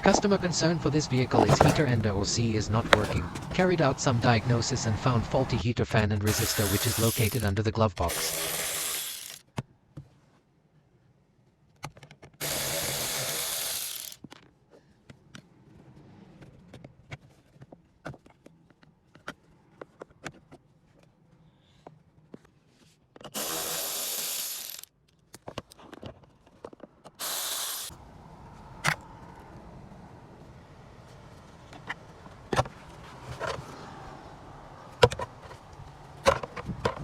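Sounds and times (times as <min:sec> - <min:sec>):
hand tools clicking and knocking: 0:01.2 - 0:02.1, 0:06.3 - 0:09.4
power tool running: 0:06.3 - 0:09.4, 0:12.4 - 0:14.2, 0:23.4 - 0:24.9, 0:27.2 - 0:28.0.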